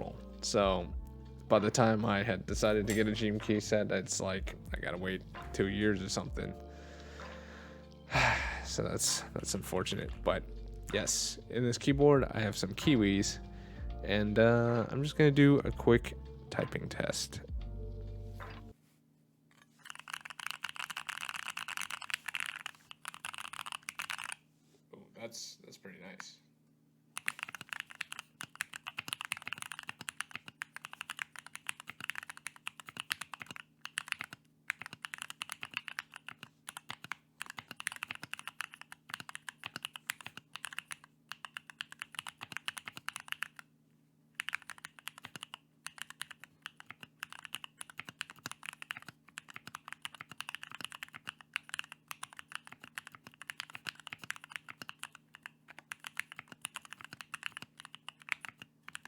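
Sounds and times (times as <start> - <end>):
mechanical keyboard typing: 19.8 - 24.4, 27.2 - 43.7, 44.4 - 59.0.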